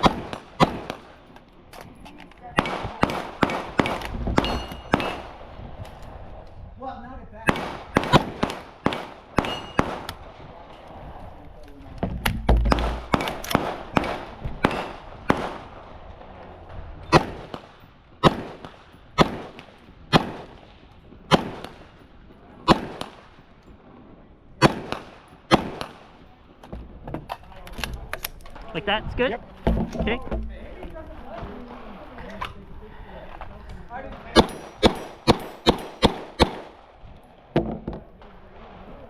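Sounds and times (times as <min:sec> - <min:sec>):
airsoft gun shots: 0:00.0 - 0:01.0, 0:02.6 - 0:05.4, 0:07.5 - 0:10.2, 0:12.2 - 0:15.7, 0:17.1 - 0:20.6, 0:24.6 - 0:26.0, 0:34.4 - 0:36.8
low rumble: 0:10.2 - 0:18.2.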